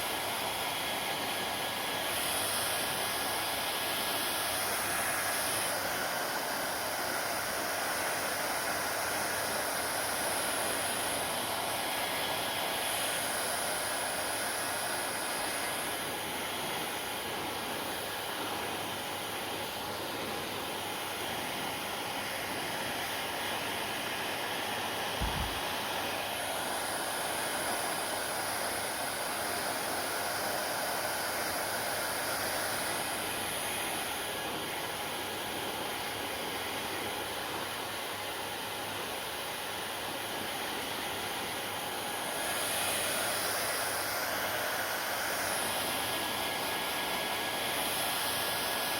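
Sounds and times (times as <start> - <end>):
hair dryer running: 0.0 - 48.9.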